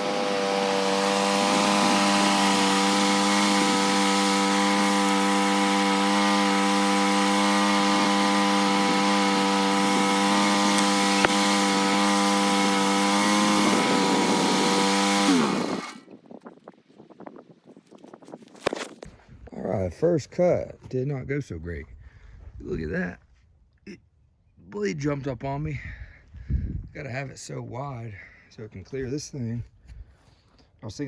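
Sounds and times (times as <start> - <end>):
band sawmill cutting log: 0.0 - 16.0.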